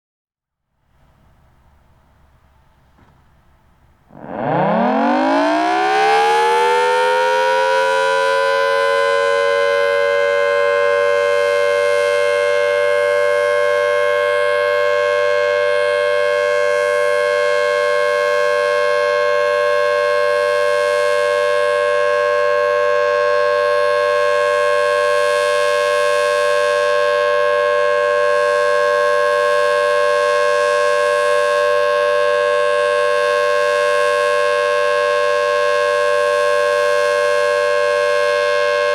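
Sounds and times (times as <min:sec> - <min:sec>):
warning siren winding up: 0:04.1 - 0:16.4, 0:35.2 - 0:38.9.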